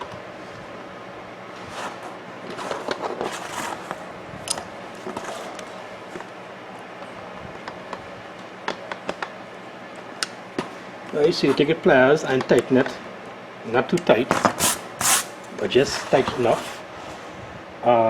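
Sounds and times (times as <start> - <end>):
scraping and rustling: 1.5 - 4.1, 4.9 - 6.2, 14.3 - 17.4.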